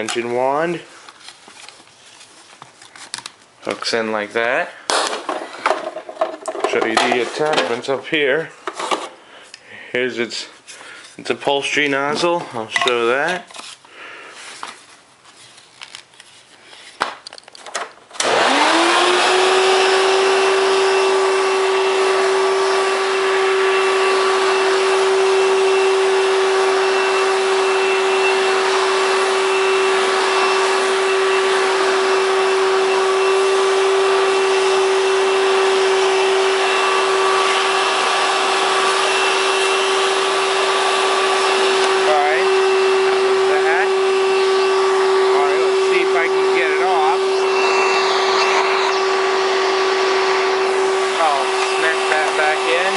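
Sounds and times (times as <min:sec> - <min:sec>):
vacuum cleaner motor whining: 0:18.2 - 0:52.9.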